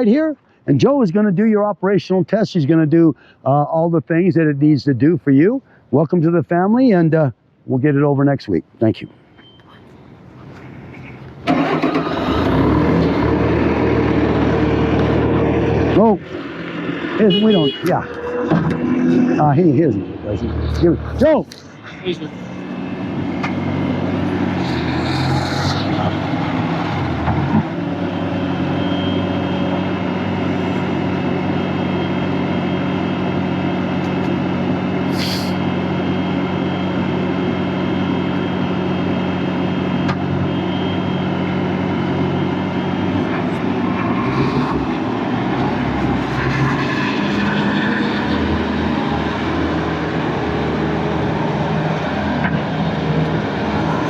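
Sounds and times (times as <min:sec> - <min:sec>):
diesel engine running: 0:09.8 - 0:54.0
brief hiss: 0:35.1 - 0:35.6.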